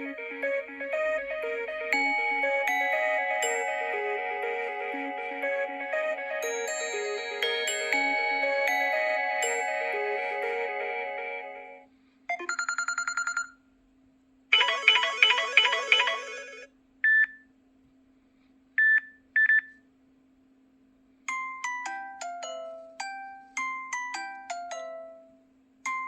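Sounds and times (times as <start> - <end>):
descending chime notes: 0.0 - 11.8
beeps: 12.3 - 13.6, 14.6 - 16.4
phone ringtones: 12.3 - 13.6, 14.6 - 16.7.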